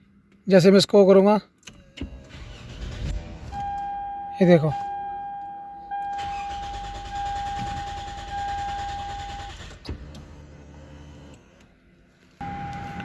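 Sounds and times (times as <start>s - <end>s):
engine cranking on starter: 1.7s - 3.6s, 6.1s - 10.3s.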